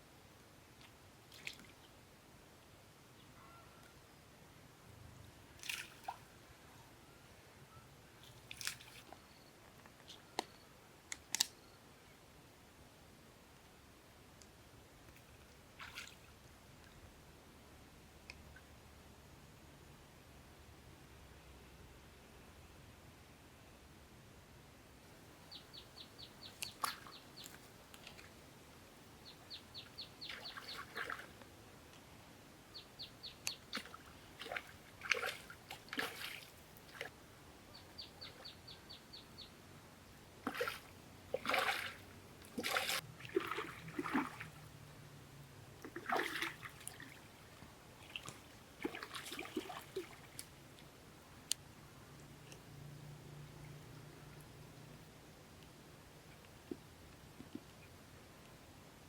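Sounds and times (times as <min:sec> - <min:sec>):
water splashing and sloshing: 0:00.8 - 0:01.9, 0:05.6 - 0:06.3, 0:08.2 - 0:09.2, 0:15.2 - 0:17.0, 0:25.7 - 0:28.6, 0:29.3 - 0:31.5, 0:33.0 - 0:37.2, 0:40.3 - 0:45.0, 0:45.8 - 0:50.9.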